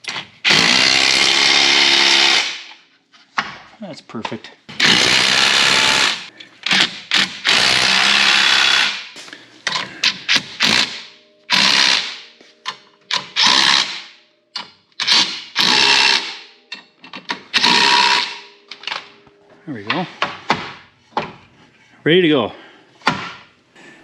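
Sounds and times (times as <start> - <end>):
power tool tightening bolts: 0.0 - 2.8, 4.7 - 9.0, 9.7 - 14.0, 14.6 - 19.1.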